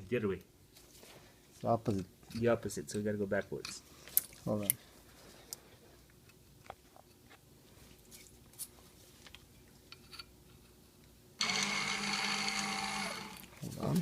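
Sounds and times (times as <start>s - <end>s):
electric motor whirring: 11.4s - 13.5s.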